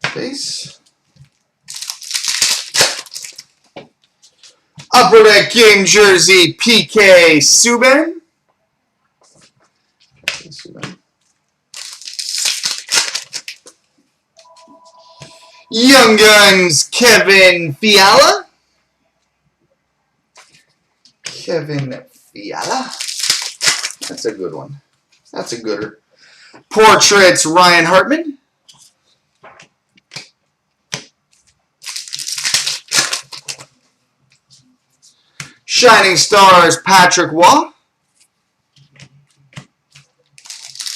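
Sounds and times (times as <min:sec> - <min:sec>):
foil wrappers crinkling and tearing: 0:01.3 - 0:03.6, 0:11.7 - 0:13.8, 0:22.6 - 0:24.3, 0:31.4 - 0:33.8, 0:39.9 - 0:40.9
two-note tone: 0:14.4 - 0:15.8.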